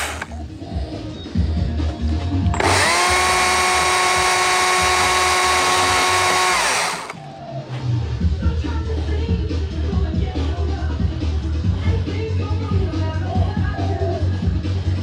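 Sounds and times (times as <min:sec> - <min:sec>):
power tool high whine: 0:00.0 - 0:00.3, 0:02.6 - 0:07.2
faint music: 0:00.0 - 0:15.0.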